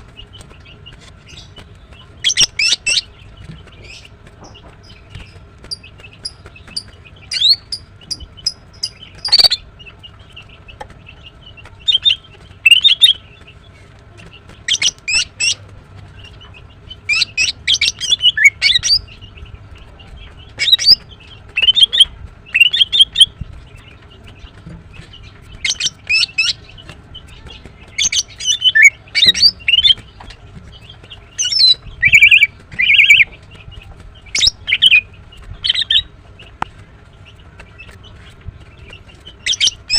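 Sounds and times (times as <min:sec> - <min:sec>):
bird chirping and whistling: 0:02.2 - 0:03.1, 0:06.2 - 0:09.6, 0:11.8 - 0:13.2, 0:17.0 - 0:19.1, 0:20.6 - 0:23.4, 0:25.5 - 0:26.6, 0:27.9 - 0:30.1, 0:31.3 - 0:33.3, 0:34.3 - 0:36.1, 0:39.4 - 0:39.9.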